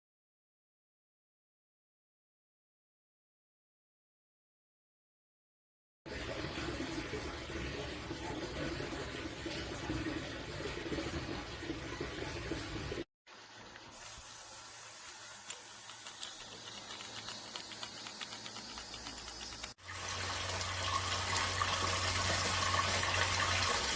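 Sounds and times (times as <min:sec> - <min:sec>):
water gushing through hose: 0:19.8 - 0:23.9.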